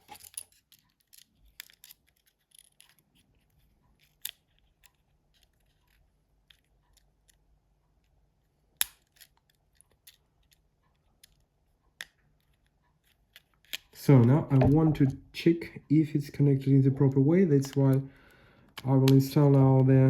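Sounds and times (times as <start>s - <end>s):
small phone parts being handled: 0.0s - 15.1s.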